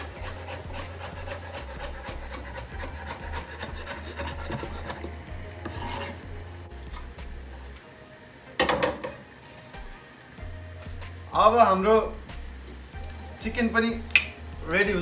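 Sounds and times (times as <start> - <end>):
knife chopping herbs: 0.0 - 6.2
knife scraping board: 0.0 - 6.3.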